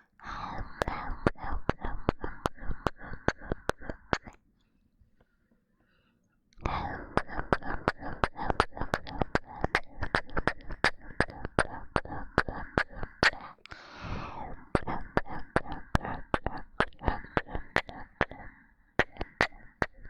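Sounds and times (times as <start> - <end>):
breathing: 0.1 - 4.0, 4.6 - 10.1, 11.1 - 16.4, 17.0 - 20.0
wet kissing sounds: 0.8 - 4.4, 7.1 - 13.4, 14.8 - 18.4, 19.0 - 20.0.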